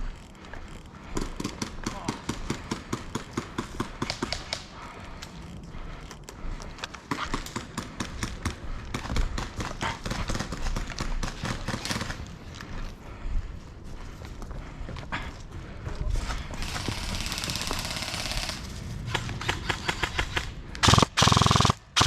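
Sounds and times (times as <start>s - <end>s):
running footsteps: 0.0s - 18.0s.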